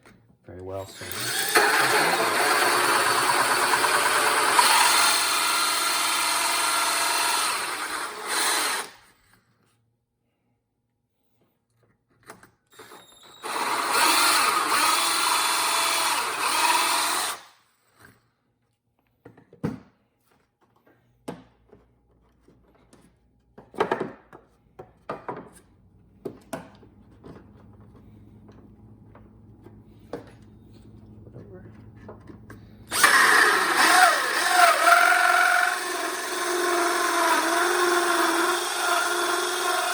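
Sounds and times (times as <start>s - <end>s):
electric drill with hole saw: 0.9s - 9.2s, 12.7s - 17.6s, 32.9s - 39.9s
tool handling knocks and clicks: 20.6s - 31.0s, 31.7s - 32.7s.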